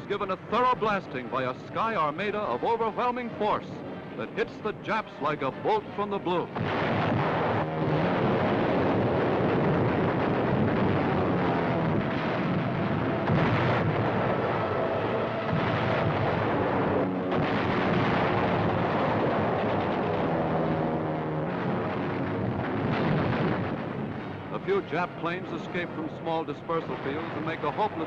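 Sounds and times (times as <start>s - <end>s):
bombing explosions: 4.3s - 28.0s
gunfire: 6.5s - 28.0s.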